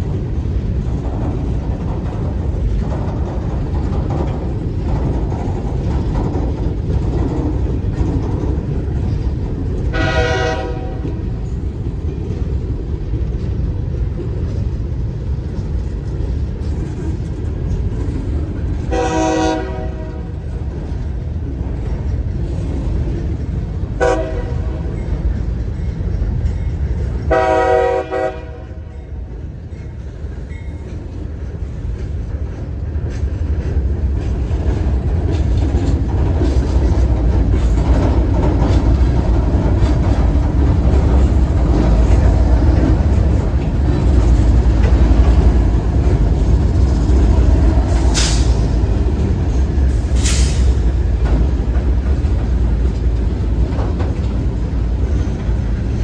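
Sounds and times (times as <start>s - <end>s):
train rumbling: 0.0s - 56.0s
locomotive air horn: 9.9s - 11.0s, 18.9s - 20.3s, 24.0s - 24.9s, 27.3s - 28.9s.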